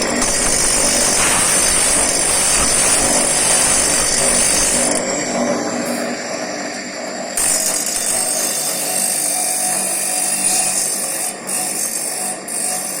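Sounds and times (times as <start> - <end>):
grinding wheel hissing on saw blade: 0.0 - 5.0.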